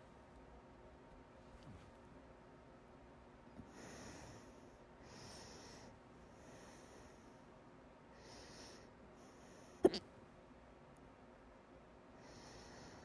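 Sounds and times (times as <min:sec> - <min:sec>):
person breathing with hiccups: 0:09.8 - 0:10.1.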